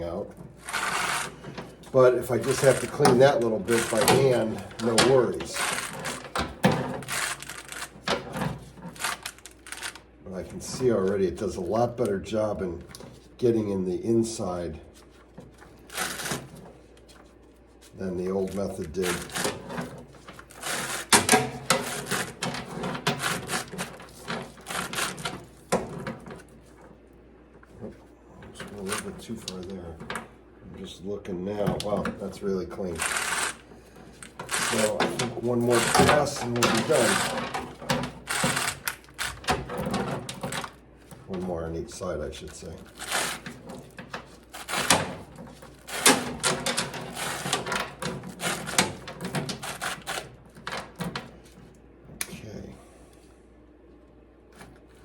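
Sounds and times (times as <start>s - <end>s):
bicycle chain clicking and rattling: 0.6s - 1.3s, 5.5s - 6.4s, 7.0s - 7.9s, 8.9s - 10.0s, 33.0s - 33.6s, 34.4s - 35.0s, 35.7s - 37.5s, 38.2s - 39.4s, 44.5s - 45.1s.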